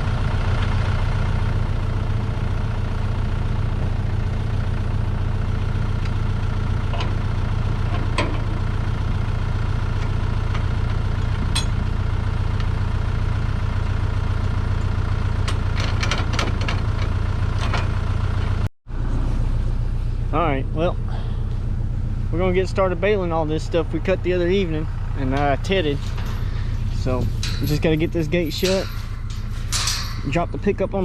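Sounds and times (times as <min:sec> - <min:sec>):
tractor engine idling: 0:00.0 - 0:31.0
sharp clicks and rattles: 0:25.2 - 0:31.0.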